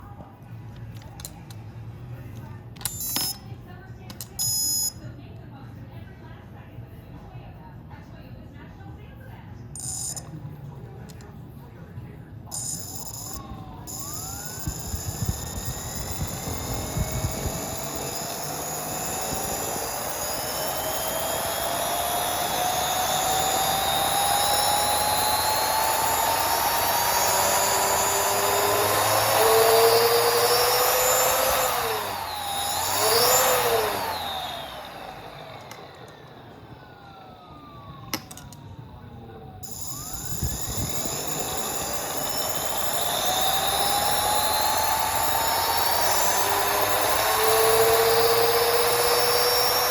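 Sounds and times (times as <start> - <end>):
click: 0.8 - 1.6, 11.1 - 11.3, 35.6 - 36.2
mechanical siren wailing: 12.5 - 49.9.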